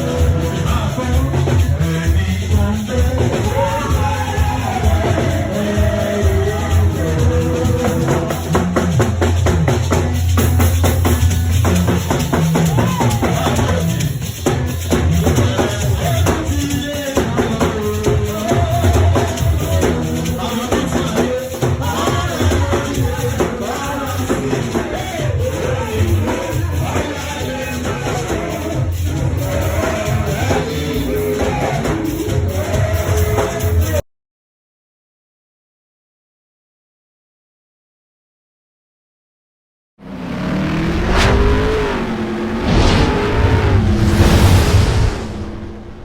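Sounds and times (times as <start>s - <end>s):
church choir singing: 0.0s - 10.4s, 15.2s - 34.0s
drum kit and hand percussion: 0.0s - 34.0s.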